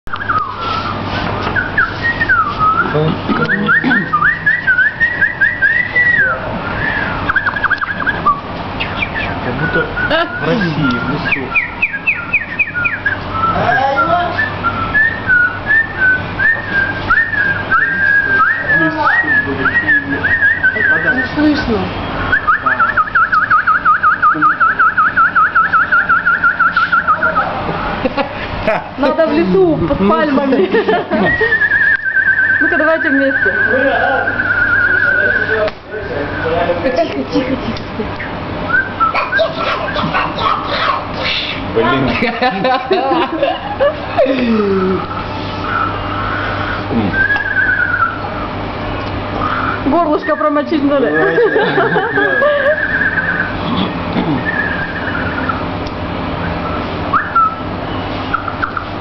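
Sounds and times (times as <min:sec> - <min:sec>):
man whistling birdsong imitation: 0:00.1 - 0:21.4, 0:22.3 - 0:27.5, 0:31.2 - 0:36.6, 0:38.2 - 0:40.2, 0:44.7 - 0:48.6, 0:49.3 - 0:50.5, 0:51.1 - 0:55.8, 0:56.4 - 0:58.9.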